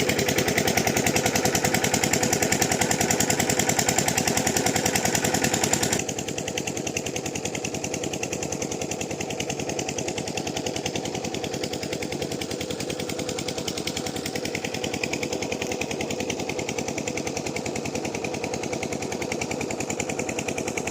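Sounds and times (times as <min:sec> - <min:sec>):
diesel engine running: 0:00.0 - 0:20.9.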